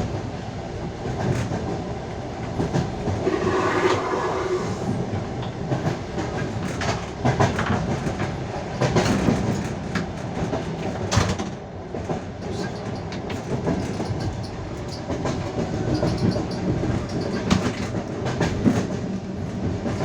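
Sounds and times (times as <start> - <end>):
train rolling rumble: 0.0 - 20.0
train wheels clacking over rail joints: 5.4 - 20.0.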